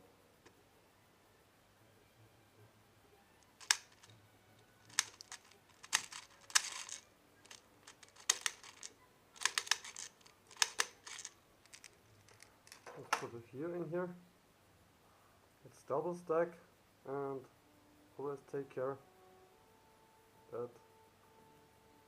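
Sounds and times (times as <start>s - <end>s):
bbs clicking into magazine: 3.4s - 4.2s, 4.8s - 13.3s.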